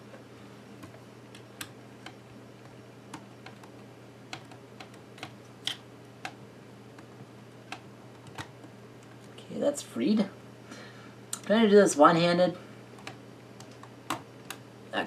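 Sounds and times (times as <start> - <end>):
steady low hum: 0.0 - 15.0
plastic laptop parts clicking: 7.7 - 9.3.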